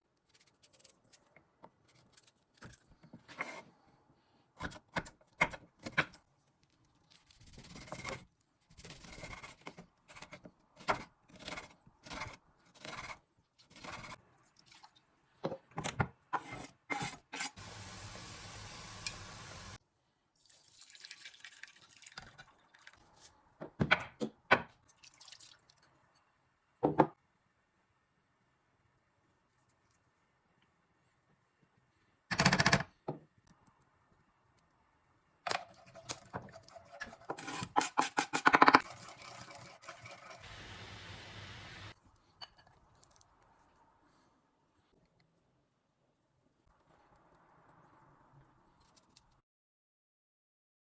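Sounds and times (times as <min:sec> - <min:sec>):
kitchen utensils knocking and scraping: 0:35.5 - 0:40.4.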